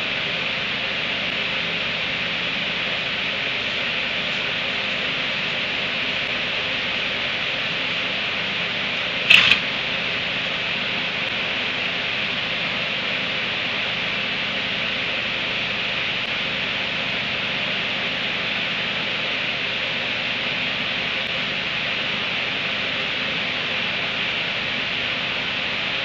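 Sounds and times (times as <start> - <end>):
steady hiss: 0.9 - 11.6.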